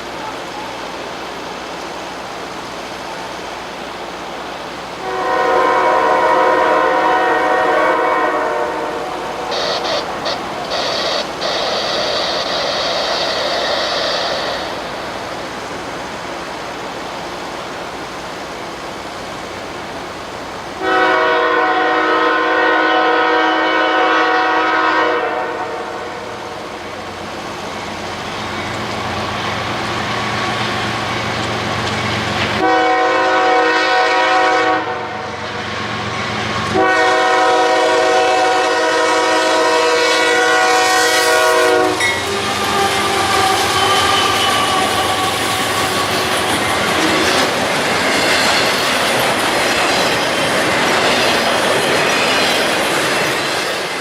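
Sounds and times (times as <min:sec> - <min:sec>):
train rumble: 0:00.0 - 0:54.0
locomotive air horn blasts: 0:05.0 - 0:11.2, 0:20.8 - 0:26.5, 0:32.6 - 0:35.5, 0:36.7 - 0:47.1.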